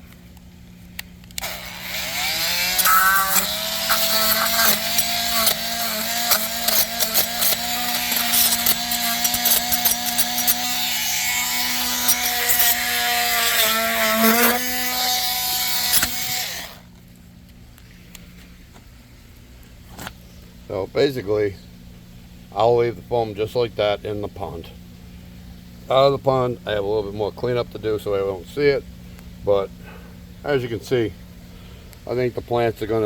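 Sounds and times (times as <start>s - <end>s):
oscillating multi-tool cutting foam: 1.3s - 16.8s.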